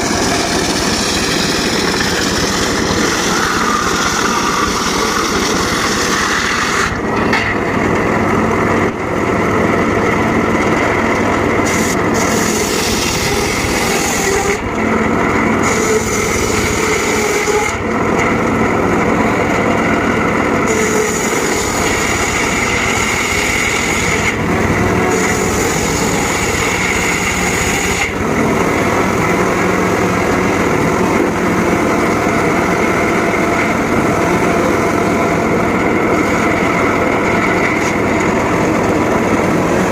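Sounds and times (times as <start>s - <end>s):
circular saw cutting wood: 0.0s - 39.9s.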